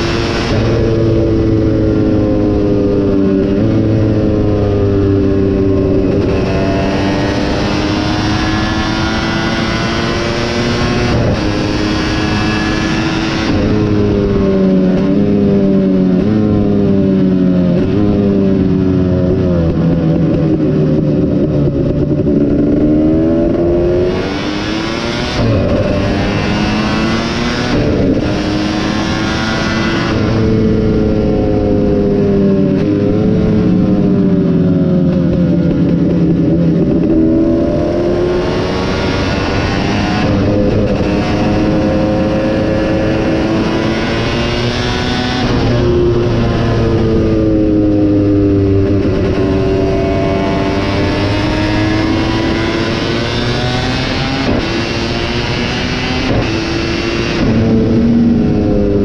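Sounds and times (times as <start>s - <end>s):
motocross engine revving: 20.9s - 34.1s, 35.4s - 59.0s.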